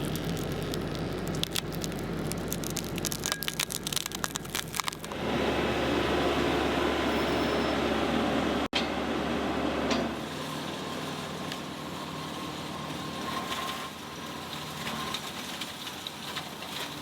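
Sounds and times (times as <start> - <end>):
wood cracking and crunching: 0.0 - 5.2
tractor engine running: 0.0 - 17.0.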